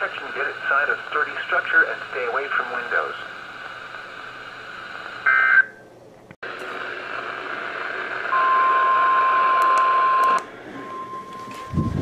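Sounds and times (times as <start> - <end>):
radio receiver hiss: 0.0 - 5.8
steady high warning tone: 6.6 - 12.0.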